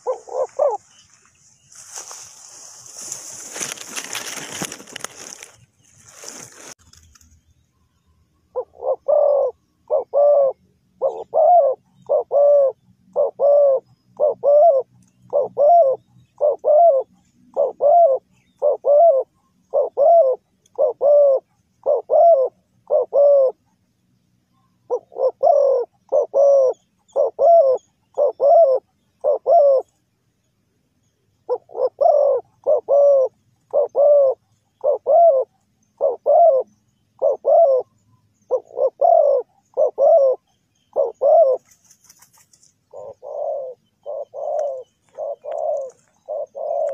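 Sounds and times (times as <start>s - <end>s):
dove cooing: 0.0s - 1.0s, 8.5s - 23.7s, 24.6s - 29.9s, 31.4s - 46.9s
faint high bird chirps: 6.8s - 46.9s.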